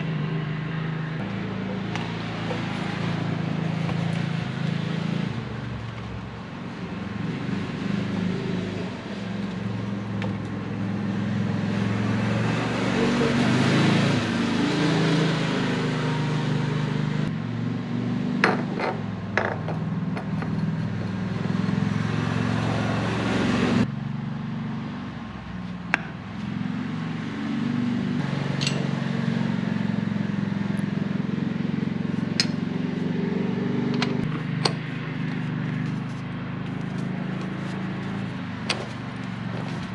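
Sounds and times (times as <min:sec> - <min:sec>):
vehicle engine and road drone: 0:00.0 - 0:39.9
sharp clicks and knocks: 0:32.4 - 0:32.6.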